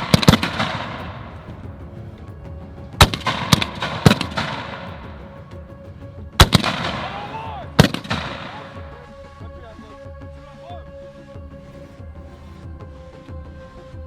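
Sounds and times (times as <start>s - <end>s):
background music: 0.0s - 14.0s.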